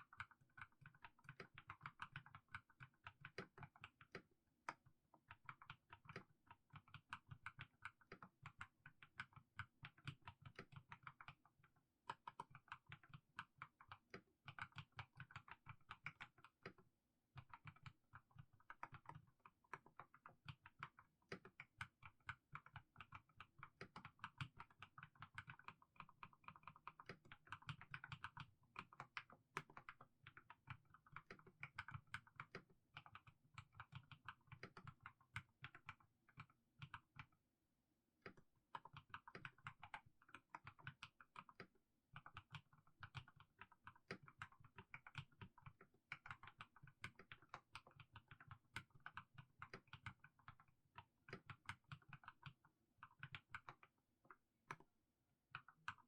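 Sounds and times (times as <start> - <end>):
mechanical keyboard typing: 18.7 - 37.3, 38.2 - 50.6.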